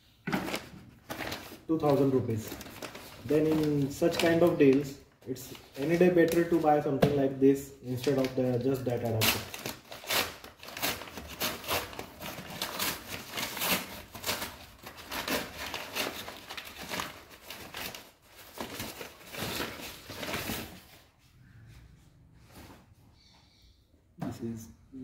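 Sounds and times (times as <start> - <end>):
packaging crinkling and tearing: 0.4 - 6.9, 7.9 - 20.9.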